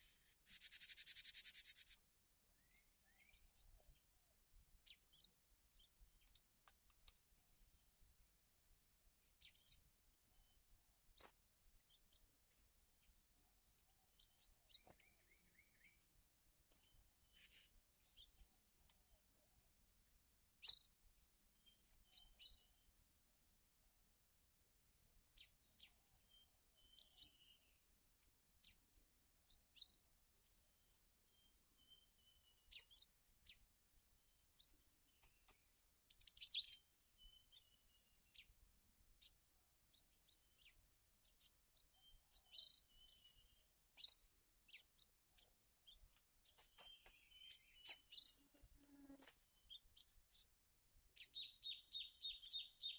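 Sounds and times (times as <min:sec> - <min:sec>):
birds chirping: 0:00.0 - 0:52.9
thin high bird whistles: 0:00.4 - 0:02.0.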